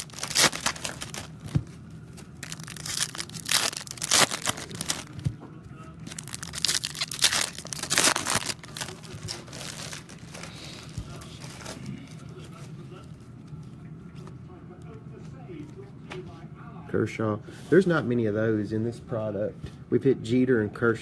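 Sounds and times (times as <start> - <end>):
foil wrappers crinkling and tearing: 0.0 - 5.2, 6.0 - 12.8.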